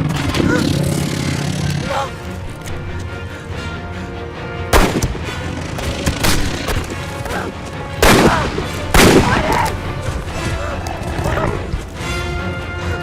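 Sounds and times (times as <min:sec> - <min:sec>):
low film score: 0:00.0 - 0:13.0
echoing gunshots: 0:04.7 - 0:06.8, 0:07.9 - 0:09.8.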